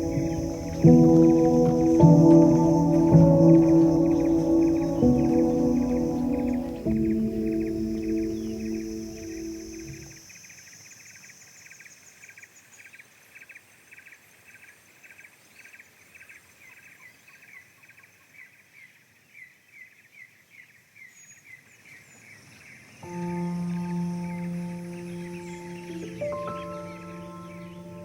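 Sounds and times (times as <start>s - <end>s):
soft ambient music: 0.0s - 10.2s, 23.0s - 28.0s
faint steady hiss: 0.0s - 28.0s.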